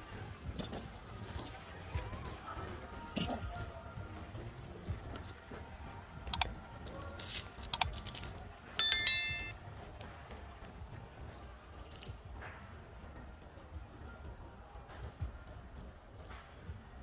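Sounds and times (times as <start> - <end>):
bell-like ding: 8.8 - 9.5.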